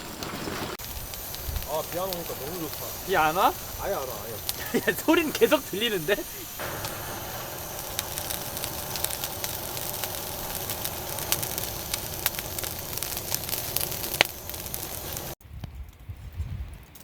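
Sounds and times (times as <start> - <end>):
campfire crackling and popping: 0.0 - 17.0.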